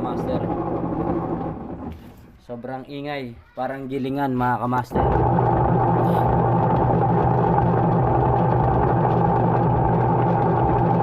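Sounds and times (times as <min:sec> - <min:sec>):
washing machine grinding whine: 0:00.0 - 0:02.3, 0:04.9 - 0:11.0.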